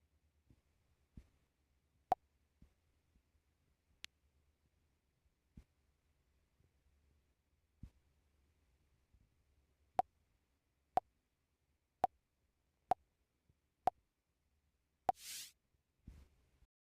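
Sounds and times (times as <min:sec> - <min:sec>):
brief high hiss: 0:15.1 - 0:15.5.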